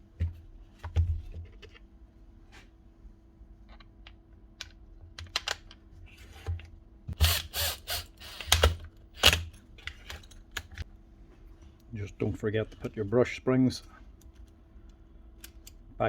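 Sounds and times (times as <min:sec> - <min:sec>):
power drill parts clicking: 0:07.2 - 0:10.8.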